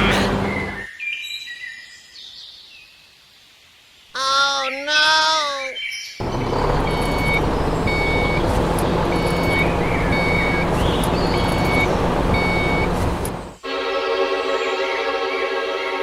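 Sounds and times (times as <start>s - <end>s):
vehicle engine running: 0.0s - 0.8s, 6.2s - 13.6s
reversing alarm beeping: 6.6s - 13.0s.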